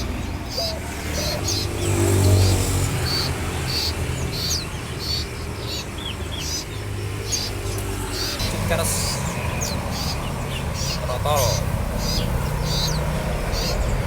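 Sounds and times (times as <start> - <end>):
passing vehicle engine hum: 0.0 - 14.0
songbirds chirping: 0.0 - 14.0.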